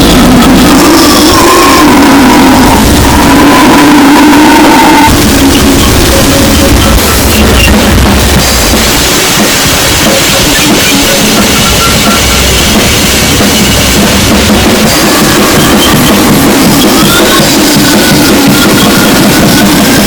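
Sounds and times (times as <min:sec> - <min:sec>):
harsh distorted noise music: 0:00.0 - 0:20.0.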